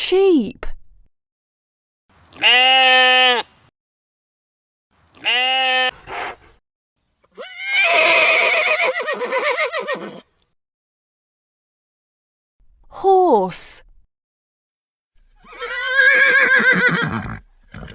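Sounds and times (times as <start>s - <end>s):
sheep bleating: 2.3s - 3.5s, 5.1s - 6.0s.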